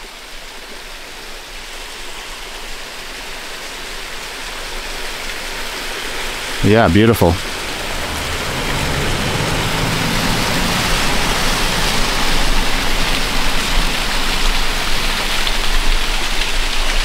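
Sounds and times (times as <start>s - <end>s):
rushing falling water: 0.0s - 17.0s
faint low car hum: 6.8s - 16.0s.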